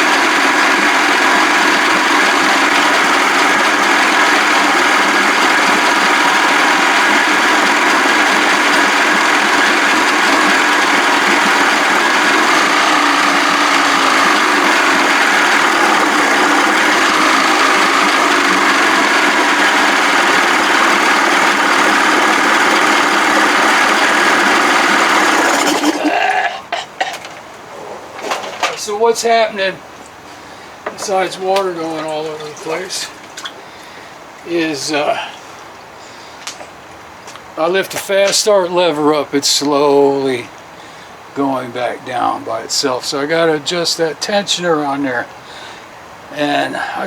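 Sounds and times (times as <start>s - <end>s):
outboard motor running: 0.0s - 36.8s.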